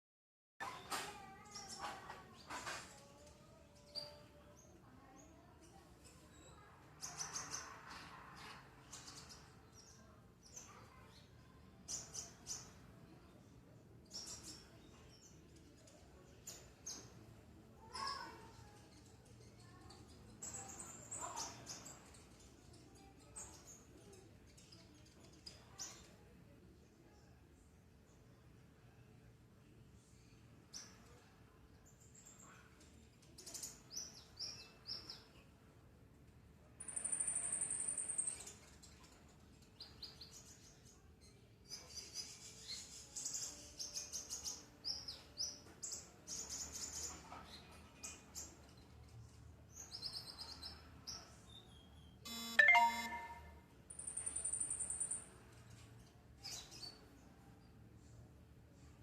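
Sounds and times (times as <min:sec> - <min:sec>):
bird chirping and twittering: 0:01.4 - 0:04.7, 0:05.6 - 0:12.8, 0:36.8 - 0:40.8, 0:41.7 - 0:55.8
songbird chirping: 0:51.8 - 0:55.8.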